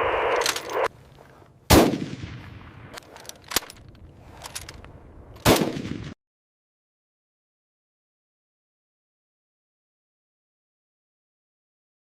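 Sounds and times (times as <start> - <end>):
gunshots echoing: 1.7 - 3.1, 5.4 - 6.2.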